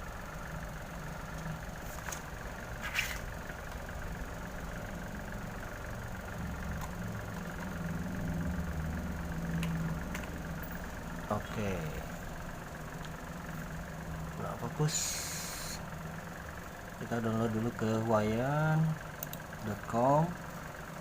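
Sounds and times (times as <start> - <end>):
low background hum: 0.0 - 21.0
faint clicks: 19.2 - 19.4.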